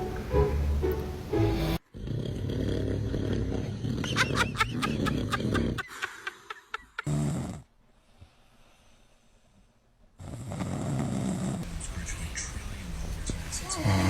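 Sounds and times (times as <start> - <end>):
man snoring: 7.0 - 7.7, 10.2 - 11.6.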